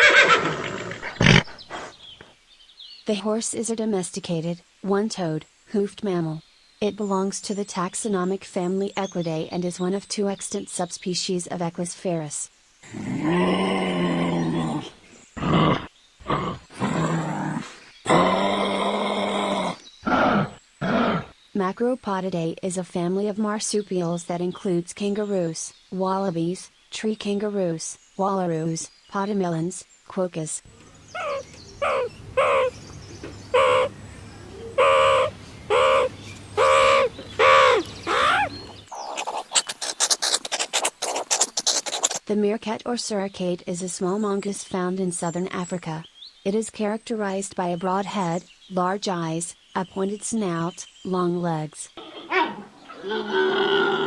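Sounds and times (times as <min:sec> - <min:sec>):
low steady hum: 0:30.7 - 0:38.8
large animal calling low: 0:30.8 - 0:32.8, 0:33.5 - 0:38.6
crow cawing: 0:31.2 - 0:32.8, 0:33.5 - 0:38.6
rapid scratching clicks: 0:39.2 - 0:42.2.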